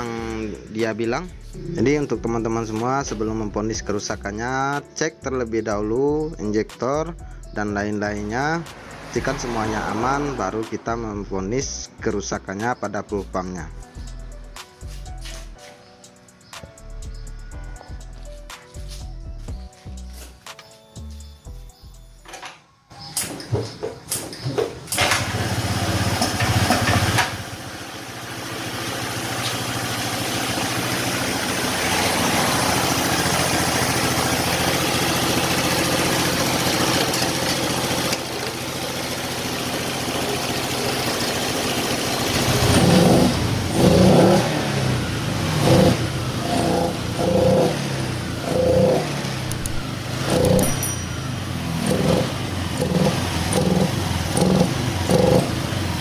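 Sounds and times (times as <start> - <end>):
engine revving rough: 8.2 - 11.6, 25.0 - 56.0
scooter engine starting and idling: 22.9 - 56.0.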